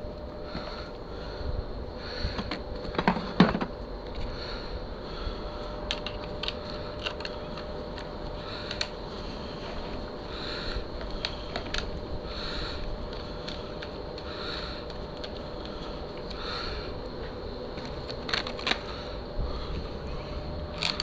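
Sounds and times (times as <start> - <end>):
metal parts and tools clinking: 5.9 - 8.0.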